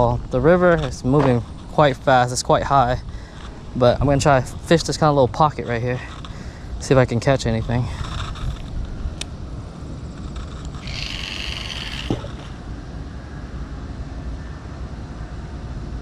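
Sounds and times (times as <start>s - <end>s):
high whirring: 10.1s - 12.8s.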